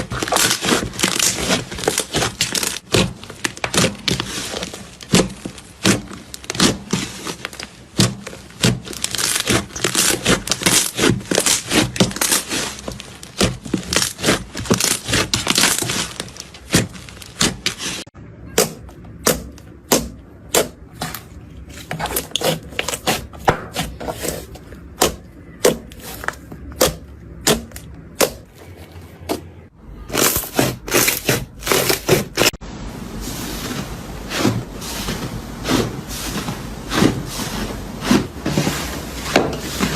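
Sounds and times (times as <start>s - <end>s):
slime crackling and popping: 0.0s - 18.0s.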